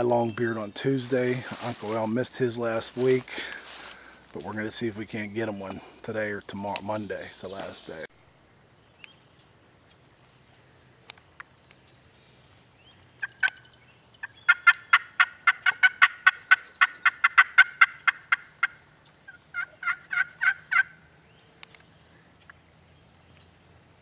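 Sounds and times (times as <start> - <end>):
turkey yelping: 13.2 - 21.1.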